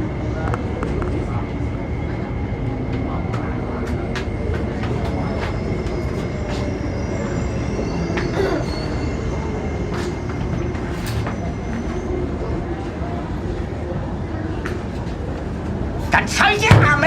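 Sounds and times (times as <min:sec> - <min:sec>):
train wheels rumbling on track: 0:00.0 - 0:17.0.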